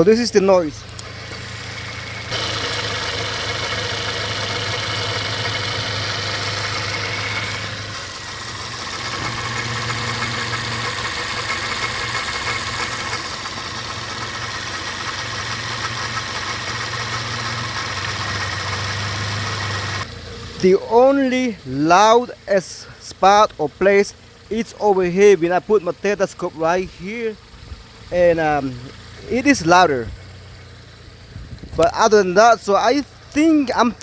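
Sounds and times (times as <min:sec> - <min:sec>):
car engine idling: 0:00.0 - 0:34.0.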